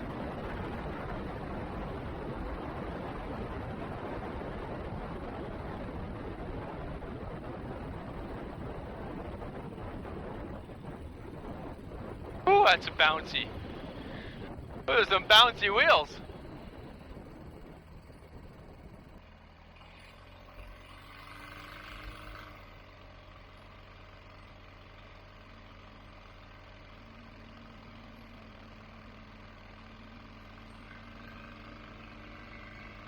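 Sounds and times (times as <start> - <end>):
aircraft engine low hum: 0.0 - 33.0
rushing noise: 12.5 - 16.3.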